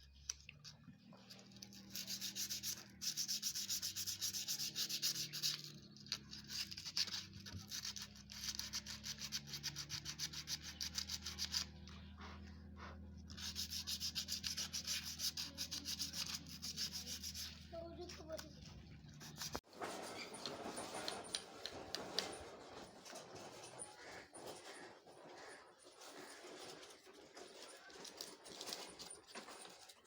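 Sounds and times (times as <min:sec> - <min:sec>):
brake parts scrubbed by hand: 0:01.2 - 0:18.4.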